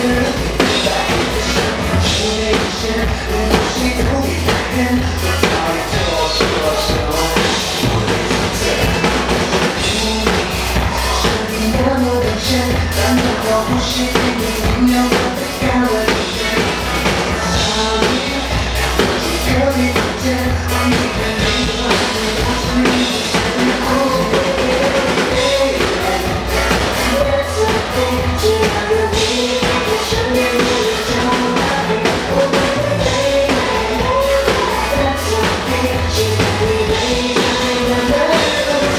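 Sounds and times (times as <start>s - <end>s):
drum kit playing a steady beat: 0.0s - 38.9s
person singing: 0.0s - 38.9s
pop song backing track: 0.0s - 38.9s.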